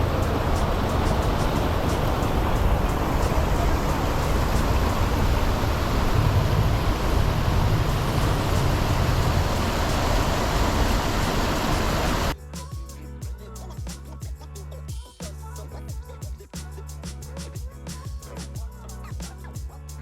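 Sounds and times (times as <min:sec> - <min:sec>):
rushing noise with low rumble: 0:00.0 - 0:12.4.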